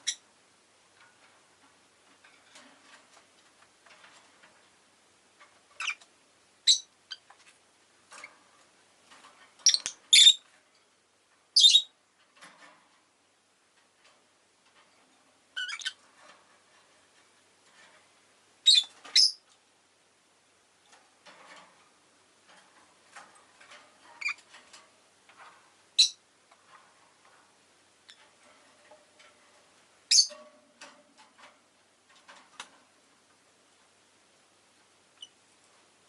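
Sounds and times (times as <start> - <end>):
bird chirping: 0.0 - 0.2, 5.8 - 7.3, 9.6 - 10.4, 11.6 - 11.9, 15.6 - 16.0, 18.6 - 19.4, 24.2 - 24.4, 26.0 - 26.2, 30.1 - 30.4.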